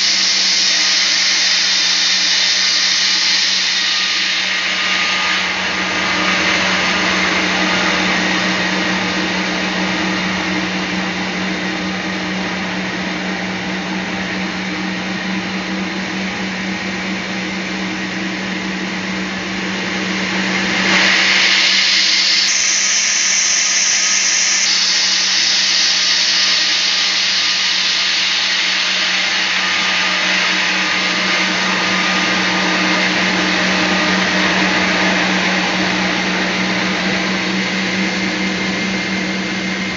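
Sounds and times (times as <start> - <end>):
saw hiss: 0.0 - 10.9, 20.7 - 38.2
band saw motor hum: 0.0 - 39.9.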